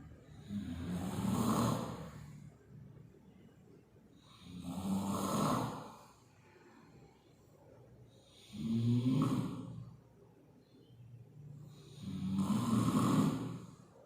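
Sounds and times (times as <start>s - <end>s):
quiet breathing: 0.0s - 14.0s
person snoring: 0.2s - 2.5s, 4.2s - 6.2s, 8.3s - 10.0s, 11.6s - 13.9s.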